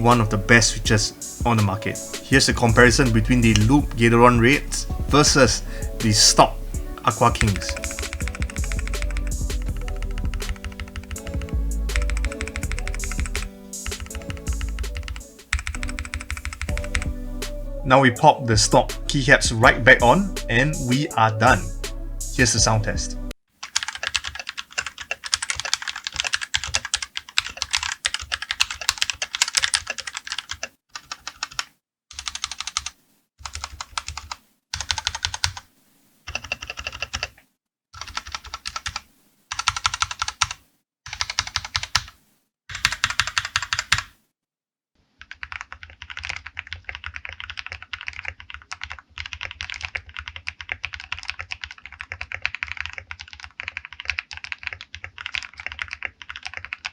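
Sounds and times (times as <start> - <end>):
mechanical keyboard typing: 1.5 - 3.9, 7.0 - 17.1, 23.6 - 35.6, 36.3 - 37.4, 38.0 - 44.1, 45.2 - 56.9.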